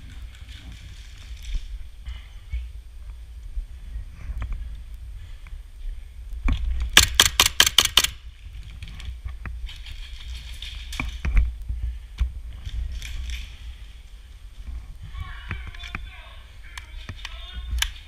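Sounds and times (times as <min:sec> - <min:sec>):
airsoft gun shots: 0:07.0 - 0:08.2.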